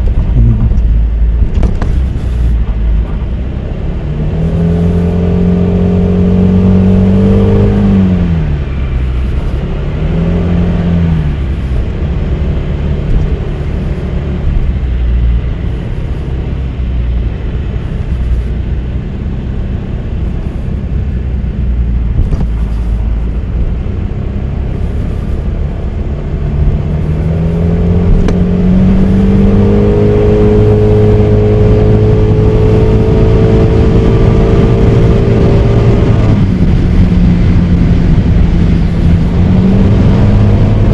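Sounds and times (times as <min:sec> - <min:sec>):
road and wind noise: 0:00.0 - 0:40.9.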